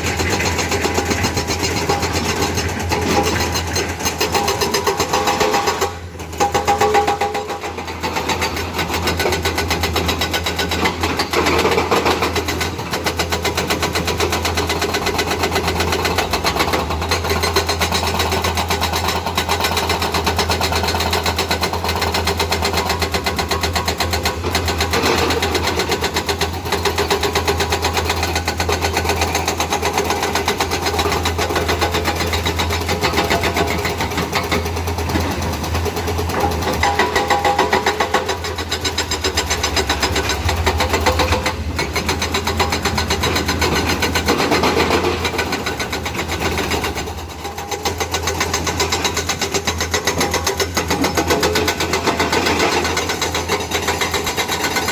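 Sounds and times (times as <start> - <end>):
diesel engine under load: 0.0 - 54.9
hydraulic breaker hammering: 22.5 - 54.9.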